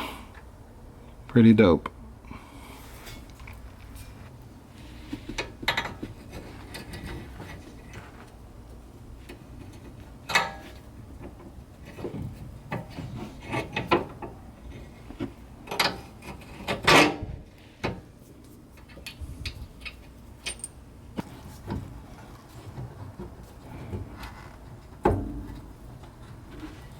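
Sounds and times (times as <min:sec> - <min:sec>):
tools and parts clicking and knocking: 0:05.3 - 0:07.6, 0:09.3 - 0:14.4, 0:15.2 - 0:17.2, 0:18.8 - 0:21.8
metal clunks: 0:25.0 - 0:26.0.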